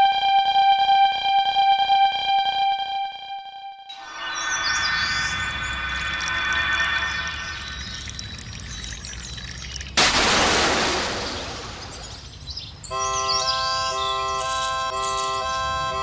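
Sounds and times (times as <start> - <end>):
pulsing reedy organ chord: 12.8 - 16.0.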